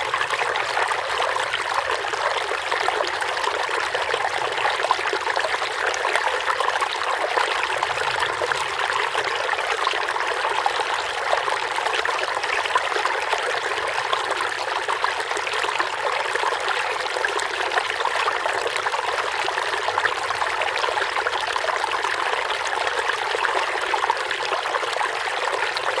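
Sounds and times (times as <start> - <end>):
water stream babbling: 0.0 - 26.0.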